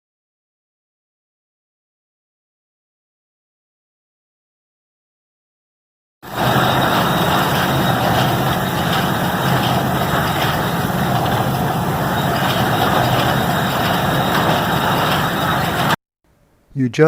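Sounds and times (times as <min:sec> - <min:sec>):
baler engine running: 0:06.3 - 0:16.0
clatter of baler mechanism: 0:06.3 - 0:16.0.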